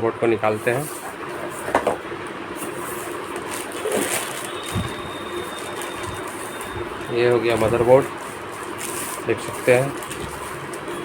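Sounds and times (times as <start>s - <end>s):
packaging rustling: 2.6s - 11.0s.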